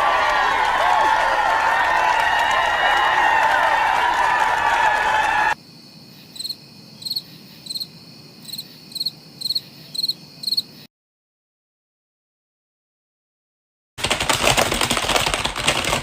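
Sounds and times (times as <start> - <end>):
cricket chirping: 5.6 - 10.9.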